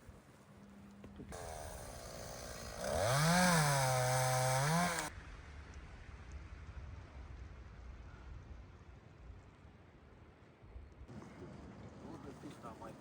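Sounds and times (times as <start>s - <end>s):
chainsaw cutting tree: 1.3s - 5.1s.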